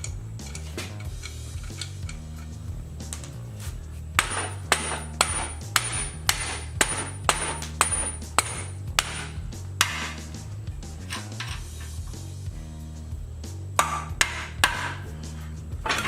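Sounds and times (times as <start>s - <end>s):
hammer striking steel: 4.2s - 10.3s, 13.8s - 15.2s.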